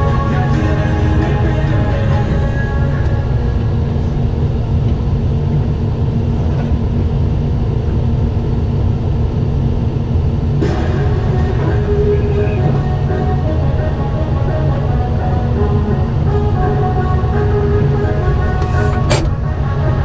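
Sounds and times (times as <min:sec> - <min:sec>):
music: 0:00.0 - 0:03.9, 0:10.6 - 0:20.0
excavator diesel engine rumble: 0:00.0 - 0:08.8, 0:10.4 - 0:20.0.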